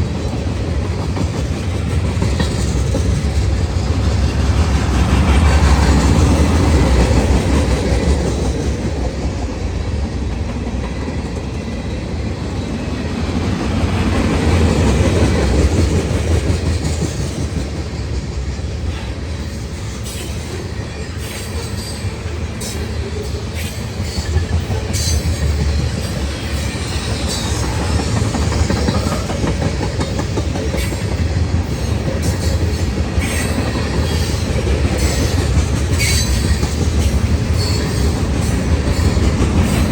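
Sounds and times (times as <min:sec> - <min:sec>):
freight cars rumbling on rails: 0:00.0 - 0:39.9.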